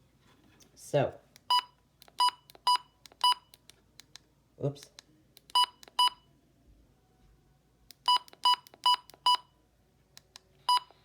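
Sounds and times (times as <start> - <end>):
short electronic keypad beeps: 10.7 - 11.0.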